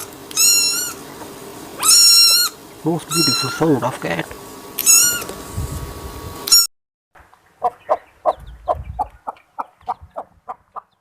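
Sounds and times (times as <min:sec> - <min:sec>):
high-pitched animal cries: 0:00.0 - 0:01.0, 0:01.8 - 0:03.8, 0:04.8 - 0:05.3
animal clucking calls: 0:07.6 - 0:11.0.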